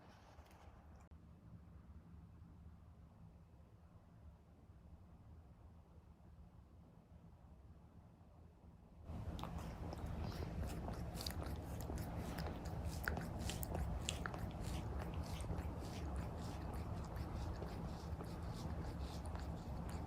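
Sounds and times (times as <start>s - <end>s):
cat purring: 9.1s - 20.0s.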